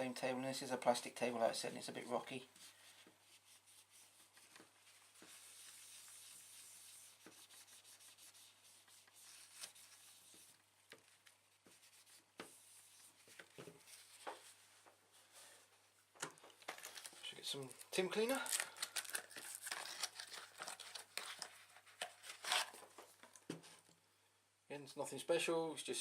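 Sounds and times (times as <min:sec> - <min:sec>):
toilet paper rubbing: 0:02.6 - 0:10.6.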